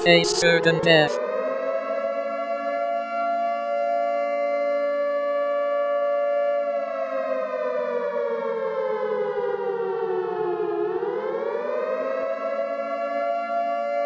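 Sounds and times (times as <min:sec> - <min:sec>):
air-raid siren: 0:00.0 - 0:14.0.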